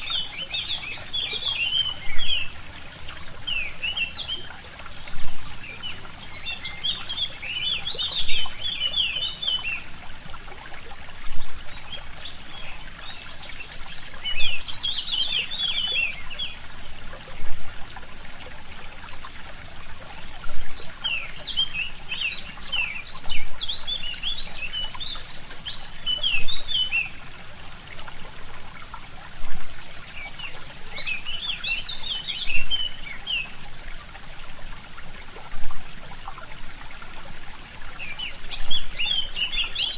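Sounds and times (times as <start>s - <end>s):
stream trickling: 0.0s - 39.9s
songbird chirping: 38.0s - 39.9s.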